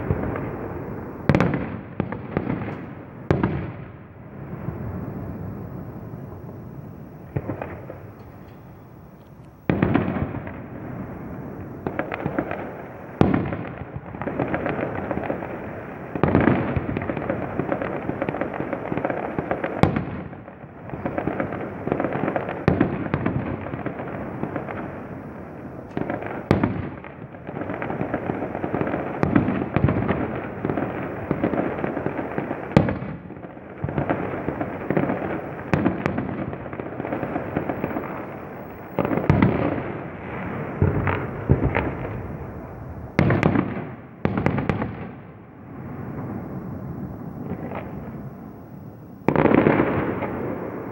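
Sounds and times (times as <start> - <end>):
fireworks crackling and banging: 0.0 - 50.9.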